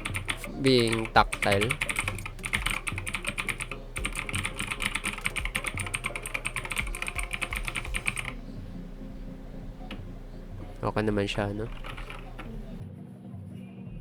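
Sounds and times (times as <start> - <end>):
fast typing on mechanical keyboard: 0.0 - 8.4, 10.7 - 12.8.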